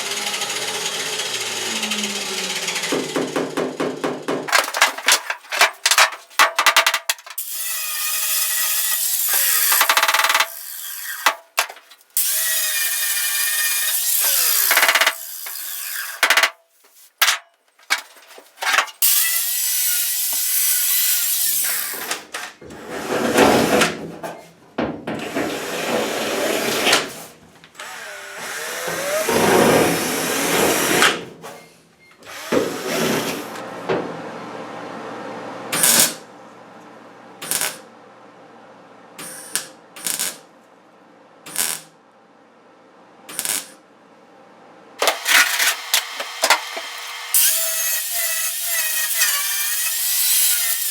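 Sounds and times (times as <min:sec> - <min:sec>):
power tool whining: 0:00.0 - 0:03.2, 0:45.0 - 0:50.9.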